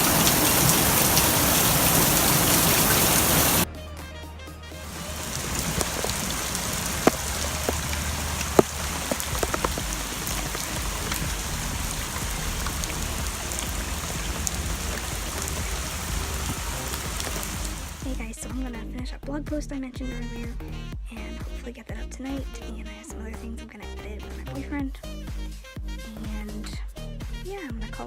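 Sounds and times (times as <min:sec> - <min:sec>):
steady rain: 0:00.0 - 0:03.7, 0:04.9 - 0:18.1.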